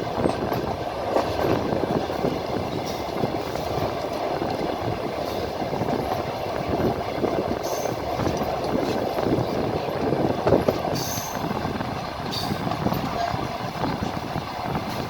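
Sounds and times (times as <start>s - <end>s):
train wheels rumbling on rails: 0.0s - 15.0s.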